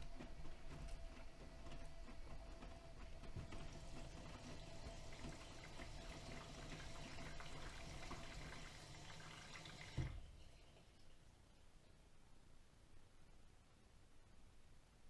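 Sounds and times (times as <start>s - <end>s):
water splashing in washing machine: 0.0s - 11.2s
washing machine hum: 0.0s - 11.7s.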